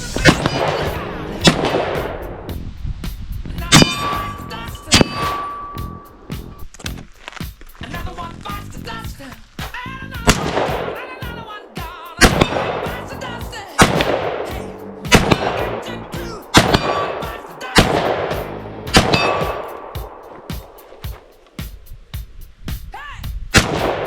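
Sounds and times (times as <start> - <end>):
gunshots: 0.0 - 2.3, 3.7 - 5.8, 10.3 - 21.2, 23.6 - 24.0.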